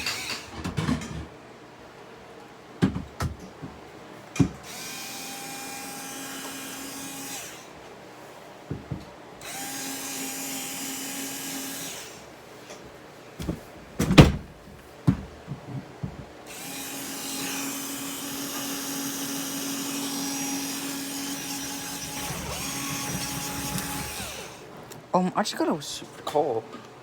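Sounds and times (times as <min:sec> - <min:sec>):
power drill whining: 0:00.0 - 0:00.5, 0:04.6 - 0:07.8, 0:09.4 - 0:12.2, 0:16.5 - 0:24.8.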